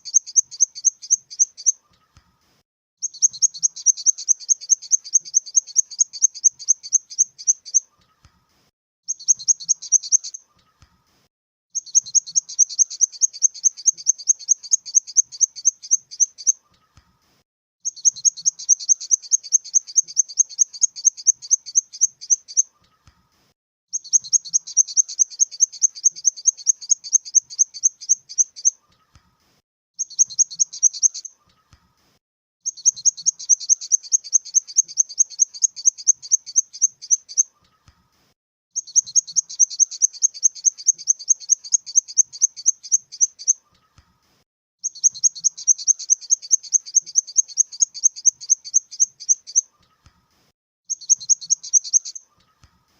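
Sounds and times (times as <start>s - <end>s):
grasshopper buzzy chirps: 0.0s - 1.7s, 3.0s - 7.8s, 9.1s - 10.4s, 11.8s - 16.6s, 17.9s - 22.6s, 24.0s - 28.7s, 30.0s - 31.3s, 32.7s - 37.4s, 38.8s - 43.6s, 44.8s - 49.6s, 50.9s - 52.2s.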